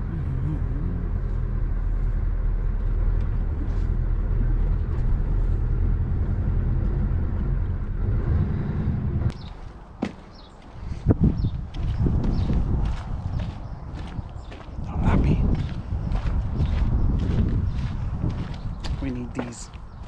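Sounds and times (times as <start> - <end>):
diesel engine running: 0.0 - 10.2.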